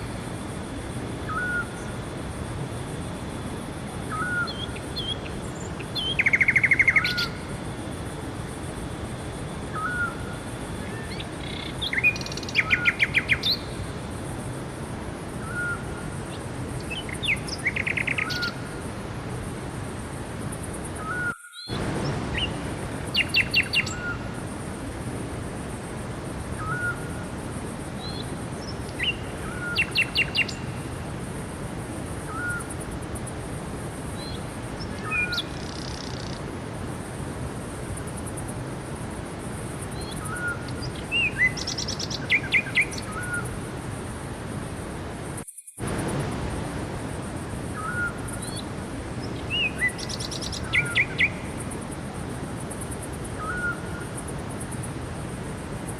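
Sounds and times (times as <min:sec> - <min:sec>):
steady rushing noise: 0:21.7 - 0:55.9.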